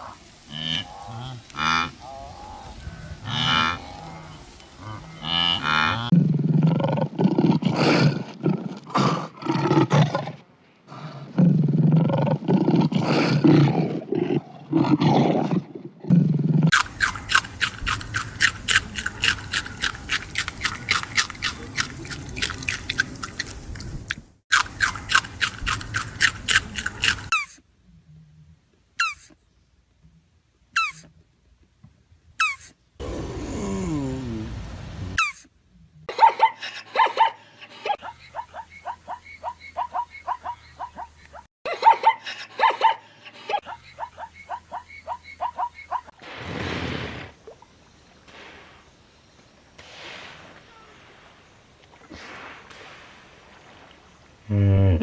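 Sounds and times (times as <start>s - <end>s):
animal calls: 16.7s - 27.6s.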